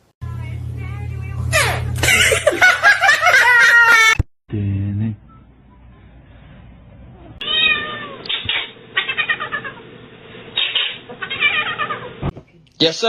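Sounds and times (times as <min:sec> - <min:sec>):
cat meowing: 0:07.4 - 0:09.8, 0:10.6 - 0:12.1.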